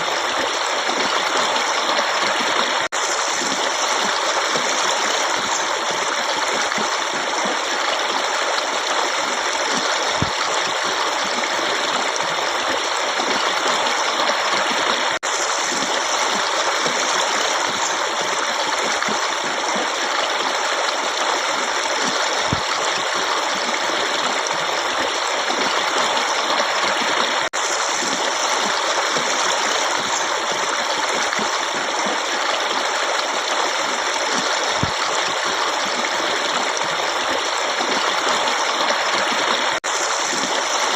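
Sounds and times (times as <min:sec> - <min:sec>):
stream running water: 0:00.0 - 0:40.9.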